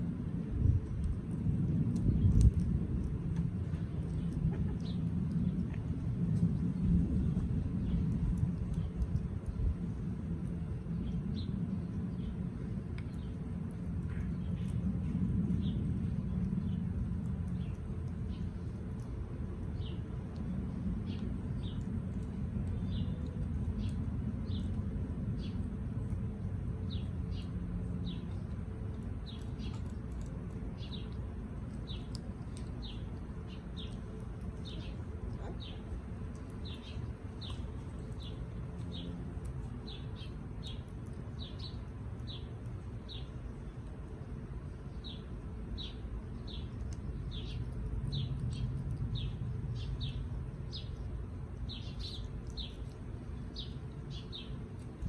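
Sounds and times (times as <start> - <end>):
low rumble: 0.0 - 55.0
bird chirping: 26.9 - 54.9.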